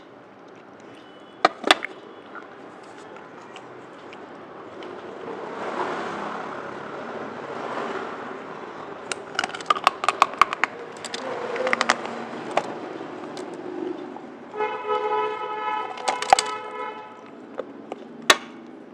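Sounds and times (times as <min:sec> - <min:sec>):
crunching crisp food: 0:00.3 - 0:05.1, 0:09.0 - 0:14.0, 0:15.9 - 0:18.2.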